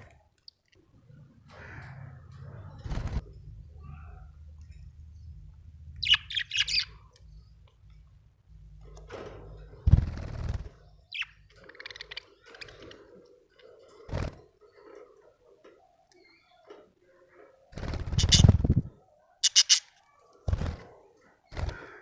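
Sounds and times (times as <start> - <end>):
budgerigar chirp: 6.0 - 6.9, 11.1 - 12.8, 19.4 - 19.9
budgerigar warbling chatter: 6.0 - 6.9, 19.4 - 19.9.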